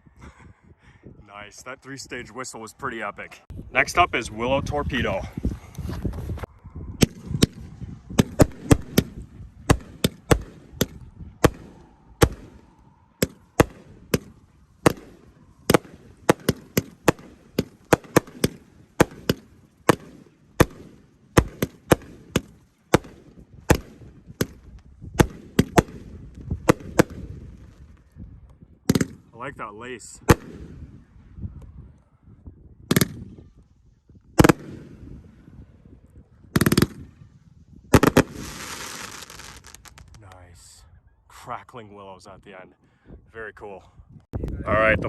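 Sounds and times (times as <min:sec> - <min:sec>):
low rumble: 0:03.3 - 0:17.6
firework shots: 0:07.0 - 0:28.0, 0:28.8 - 0:29.3, 0:30.2 - 0:31.1, 0:32.8 - 0:33.6, 0:34.4 - 0:35.8, 0:36.4 - 0:40.4.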